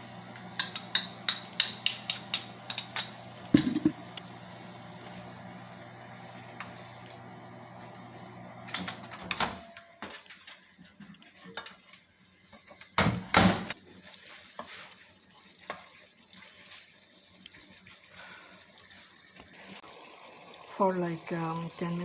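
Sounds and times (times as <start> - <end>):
cookware clattering on stovetop: 0.6 - 4.0
steady hum: 3.6 - 4.4.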